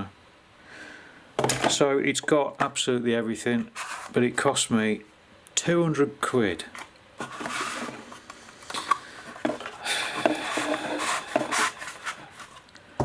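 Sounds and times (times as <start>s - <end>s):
rubbing and rustling of packaging: 3.6s - 4.4s, 6.6s - 12.7s.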